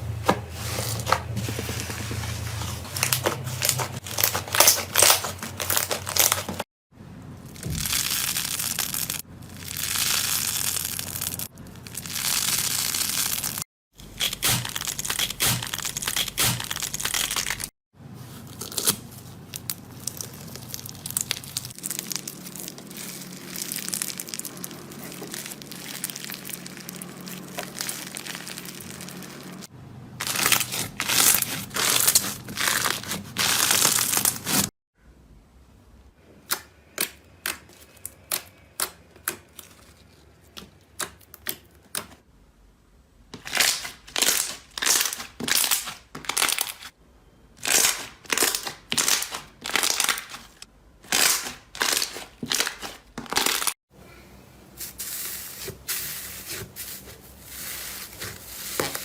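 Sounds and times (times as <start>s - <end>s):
slime squishing and crackling: 2.9s - 6.6s, 7.4s - 13.6s, 18.6s - 34.7s, 43.4s - 46.9s, 47.6s - 53.8s.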